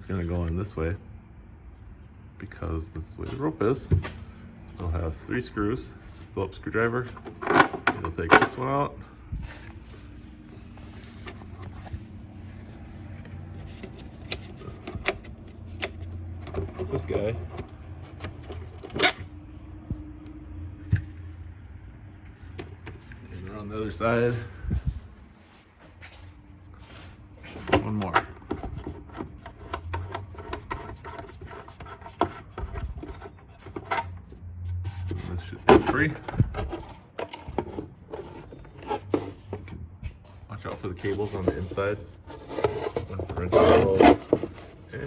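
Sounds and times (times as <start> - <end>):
screwdriver scraping and clicking: 13.2 - 19.3, 27.6 - 34.2.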